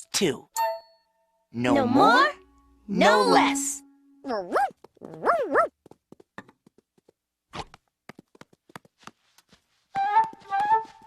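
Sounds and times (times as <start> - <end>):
cartoon dog yipping: 4.2 - 5.8.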